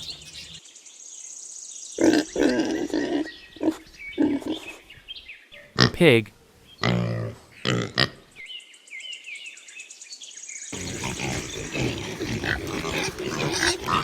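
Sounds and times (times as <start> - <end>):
faint high chirping: 0.0 - 2.2
pigs grunting: 2.0 - 4.8, 5.8 - 6.0, 6.8 - 8.3, 10.8 - 14.0
pig squeals: 10.8 - 14.0.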